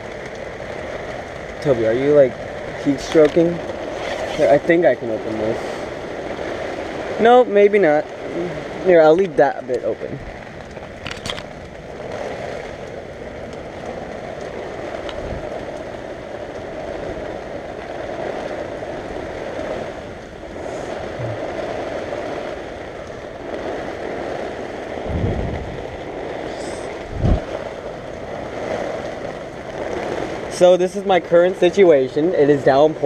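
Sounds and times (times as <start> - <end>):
heavy rain on a tent: 0.0 - 33.0
low thumps: 25.0 - 27.8.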